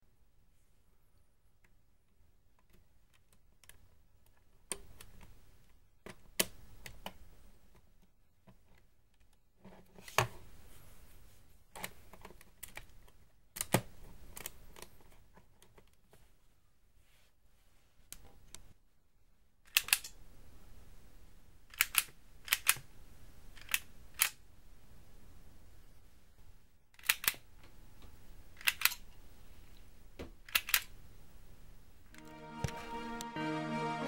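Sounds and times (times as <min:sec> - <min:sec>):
plastic toy clicking and rattling: 0:19.7 - 0:20.2, 0:21.7 - 0:22.8, 0:23.6 - 0:24.4, 0:26.9 - 0:27.4, 0:28.5 - 0:29.1, 0:30.4 - 0:30.9.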